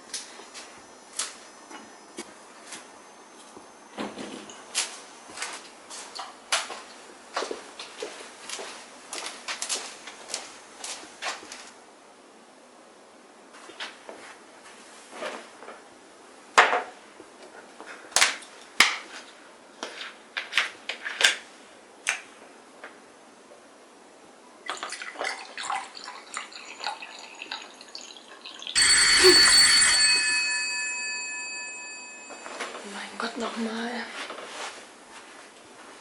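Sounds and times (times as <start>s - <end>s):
doorbell ringing: 28.8s - 33.2s.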